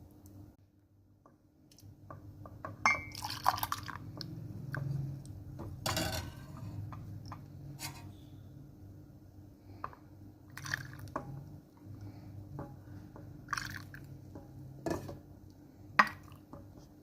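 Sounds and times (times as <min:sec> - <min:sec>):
low steady hum: 0:00.0 - 0:17.0
kitchen clicks and knocks: 0:05.6 - 0:07.0.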